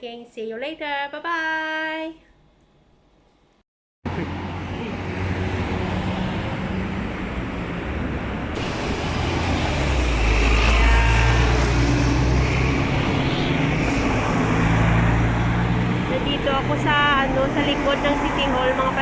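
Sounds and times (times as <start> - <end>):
large vehicle engine humming: 4.1 - 19.0
road traffic: 4.1 - 19.0.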